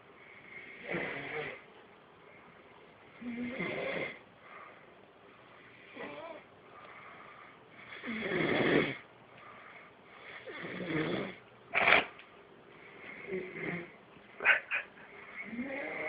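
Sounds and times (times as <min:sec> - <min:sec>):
long snores: 0:00.6 - 0:01.6, 0:03.2 - 0:04.2, 0:07.8 - 0:09.0, 0:10.4 - 0:11.4, 0:13.2 - 0:14.0, 0:15.4 - 0:16.0
sharp snort: 0:11.0 - 0:12.2.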